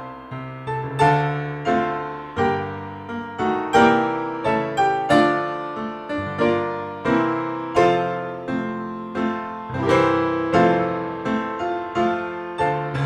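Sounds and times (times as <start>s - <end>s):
piano music: 0.0s - 13.0s.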